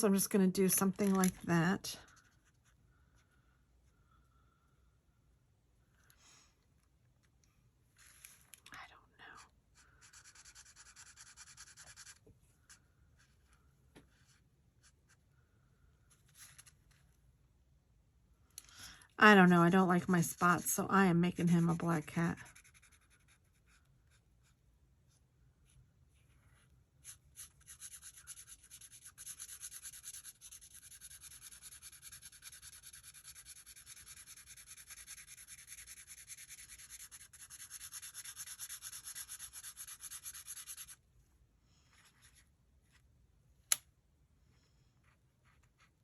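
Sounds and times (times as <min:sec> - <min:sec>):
marker scribbling on paper: 0:10.0 - 0:12.2, 0:20.2 - 0:24.2, 0:27.0 - 0:41.0.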